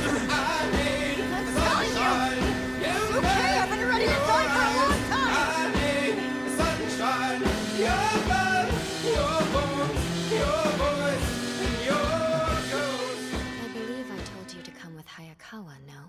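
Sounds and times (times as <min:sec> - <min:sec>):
steady drum beat: 0:00.0 - 0:05.5.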